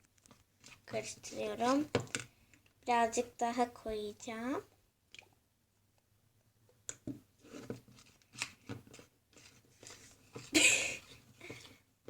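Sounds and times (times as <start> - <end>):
slime squishing and scraping: 0.2 - 2.2, 7.4 - 10.5.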